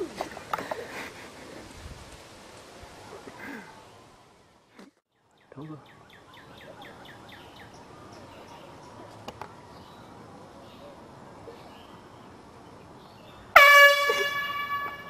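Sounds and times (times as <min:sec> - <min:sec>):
air horn blast: 0:13.6 - 0:15.0.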